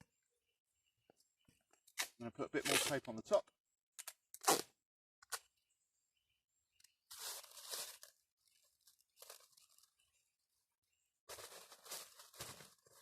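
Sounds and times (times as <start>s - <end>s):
duct tape ripping: 2.0s - 3.0s, 4.0s - 4.7s.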